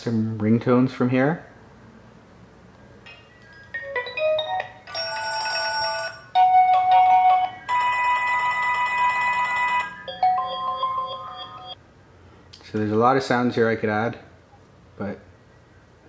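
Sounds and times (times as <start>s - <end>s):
phone ringtone melodies: 3.1s - 11.8s.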